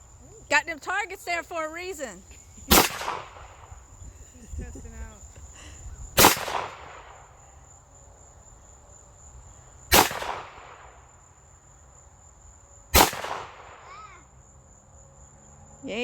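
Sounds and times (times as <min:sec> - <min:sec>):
insects buzzing: 0:00.0 - 0:16.0
gunshots with echo: 0:02.7 - 0:03.7, 0:06.2 - 0:07.3, 0:09.9 - 0:11.1, 0:13.0 - 0:14.0.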